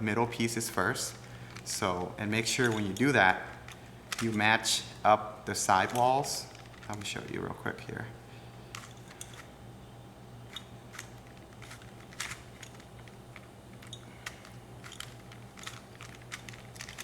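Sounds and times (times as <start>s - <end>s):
low steady hum: 0.0s - 17.0s
plastic puzzle cube clicking: 10.5s - 17.0s.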